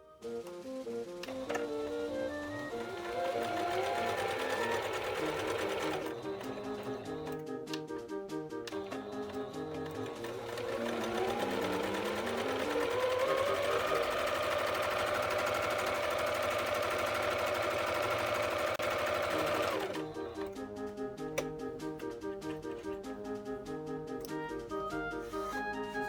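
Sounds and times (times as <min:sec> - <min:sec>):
sewing machine running: 0:01.2 - 0:07.4, 0:08.7 - 0:20.6.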